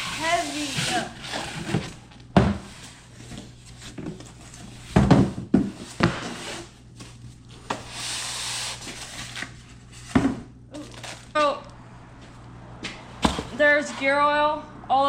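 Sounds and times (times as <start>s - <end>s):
scraping rustle of packaging: 6.3s - 10.1s, 10.8s - 11.4s.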